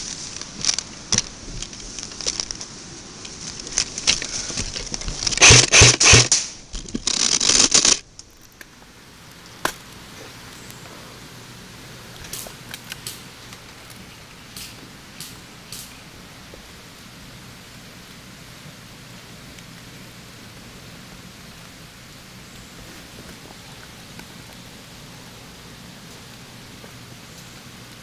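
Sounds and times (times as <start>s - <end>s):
rustling and scraping: 0.0s - 8.8s, 22.4s - 24.7s
sharp clicks: 3.7s - 8.7s, 12.2s - 16.0s
loud brushing strokes: 5.2s - 8.0s.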